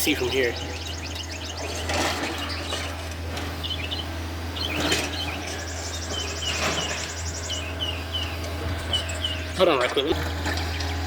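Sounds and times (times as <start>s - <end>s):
birds chirping: 0.0s - 11.0s
distant excavator engine droning: 0.0s - 11.0s.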